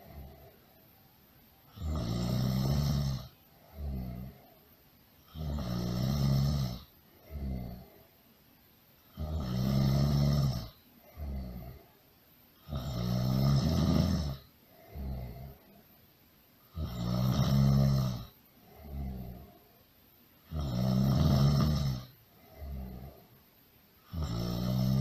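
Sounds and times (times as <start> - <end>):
person snoring: 0.0 - 0.7, 1.7 - 4.6, 5.2 - 8.1, 9.1 - 12.0, 12.6 - 15.8, 16.7 - 19.8, 20.4 - 23.4, 24.0 - 25.0.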